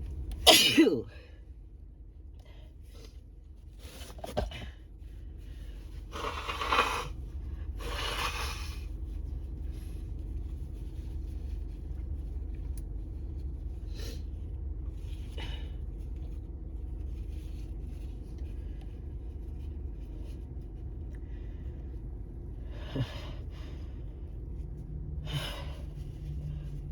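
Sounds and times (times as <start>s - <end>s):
steady low hum: 0.0s - 26.9s
person breathing hard: 22.6s - 24.2s, 25.2s - 26.1s.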